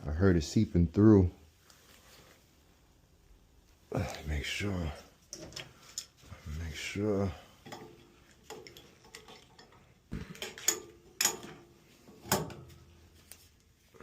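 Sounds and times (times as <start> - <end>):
metal parts and tools clanking: 5.3 - 6.2, 7.6 - 12.9
sharp metal knocks: 10.2 - 12.6.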